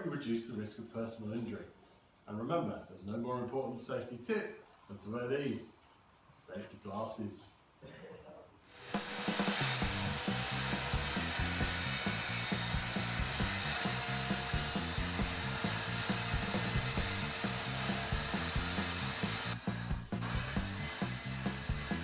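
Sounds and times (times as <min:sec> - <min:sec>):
power saw cutting plywood: 0:08.7 - 0:22.0.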